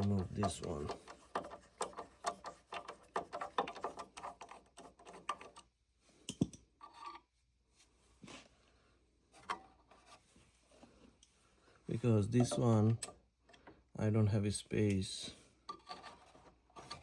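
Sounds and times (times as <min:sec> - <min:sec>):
rapid scratching and clicking: 0:00.0 - 0:05.6.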